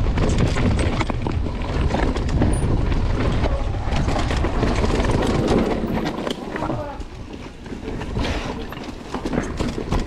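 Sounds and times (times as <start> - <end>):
tyres rumbling over dirt and rocks: 0.0 - 10.0
bike rattling knocks: 8.8 - 10.0.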